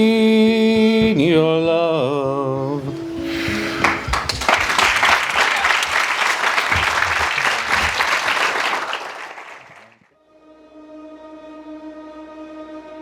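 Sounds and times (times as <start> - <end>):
crowd applauding: 2.9 - 10.0.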